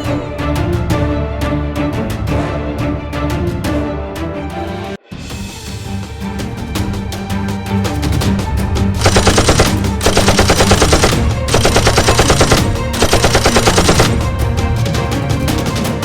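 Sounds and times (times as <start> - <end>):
background music: 0.0 - 16.0
automatic gunfire: 9.0 - 14.2.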